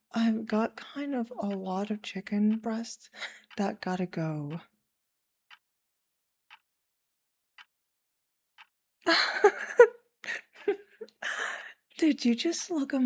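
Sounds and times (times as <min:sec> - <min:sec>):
woman's voice: 0:00.0 - 0:04.6, 0:09.1 - 0:13.0
clock ticking: 0:00.0 - 0:04.7, 0:06.5 - 0:06.7, 0:07.5 - 0:07.7, 0:08.5 - 0:13.0.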